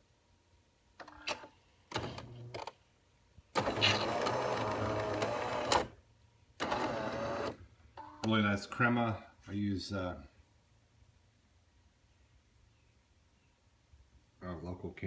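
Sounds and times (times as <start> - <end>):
espresso machine pump running: 3.6 - 5.8.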